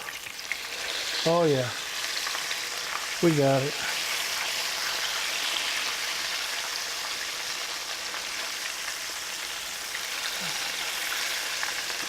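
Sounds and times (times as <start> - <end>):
cutlets sizzling in hot oil: 0.0 - 12.0.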